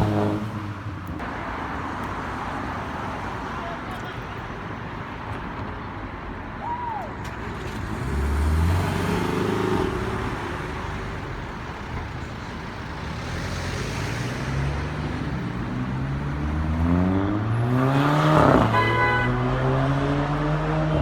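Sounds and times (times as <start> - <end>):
car engine accelerating: 7.4 - 11.4, 12.8 - 21.0.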